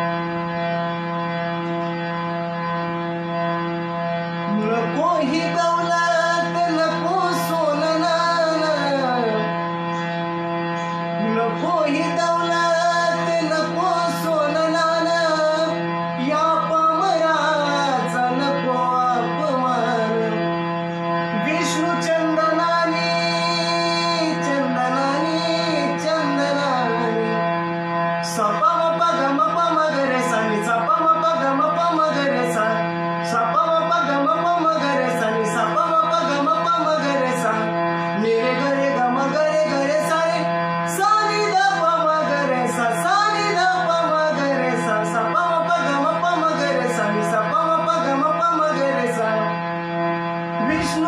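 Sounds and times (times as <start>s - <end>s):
steady drone: 0.0s - 51.0s
man singing devotional song: 2.6s - 51.0s
steady drone accompaniment: 34.0s - 51.0s.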